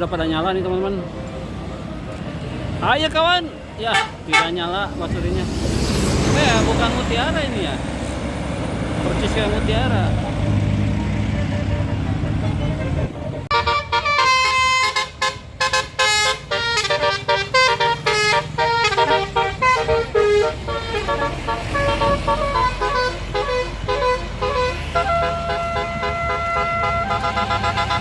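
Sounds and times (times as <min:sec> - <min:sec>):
musical bus horn: 0:03.8 - 0:04.9, 0:11.0 - 0:28.0.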